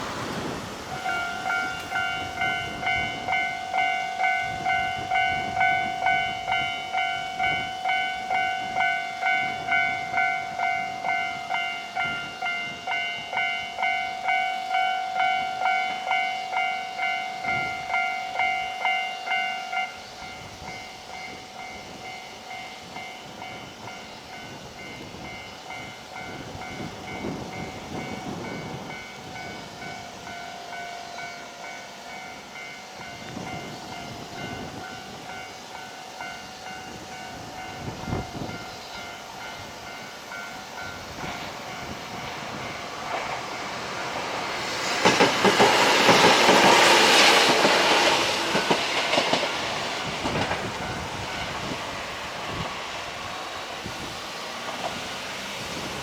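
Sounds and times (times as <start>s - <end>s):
level crossing alarm ringing: 0.9s - 43.8s.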